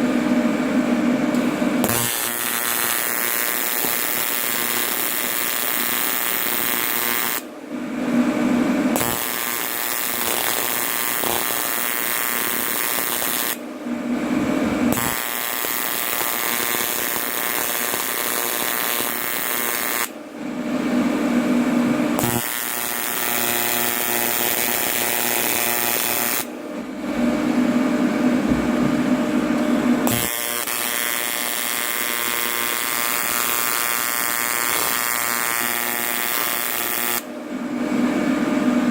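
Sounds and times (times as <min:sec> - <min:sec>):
welding arc buzzing: 0:01.3 - 0:07.5, 0:08.9 - 0:13.6, 0:14.3 - 0:20.2, 0:22.2 - 0:26.5, 0:28.5 - 0:37.3.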